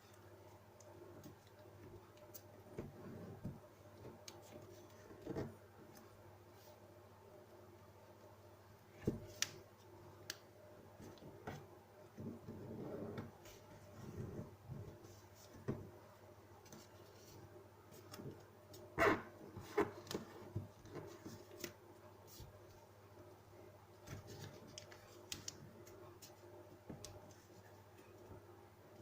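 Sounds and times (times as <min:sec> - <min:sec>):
soft paper crinkles and taps: 0:24.0 - 0:28.3.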